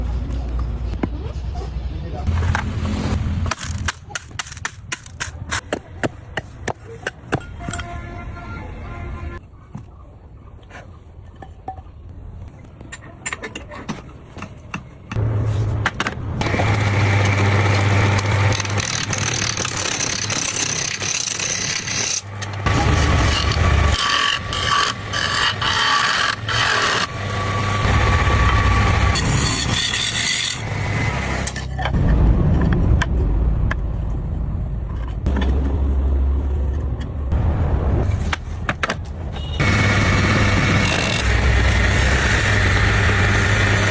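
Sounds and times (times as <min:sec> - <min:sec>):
tool scraping wood: 0:16.4 - 0:32.0.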